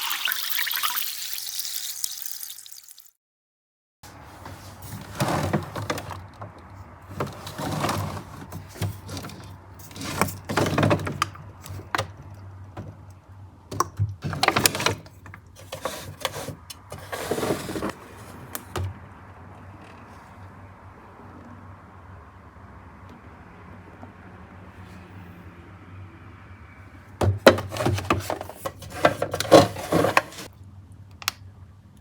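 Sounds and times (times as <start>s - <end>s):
items knocking and clicking: 4.9s - 13.1s, 13.7s - 18.0s, 27.2s - 30.5s
refrigerator door handled: 7.1s - 12.2s, 13.7s - 17.9s, 18.5s - 19.0s, 27.2s - 30.5s.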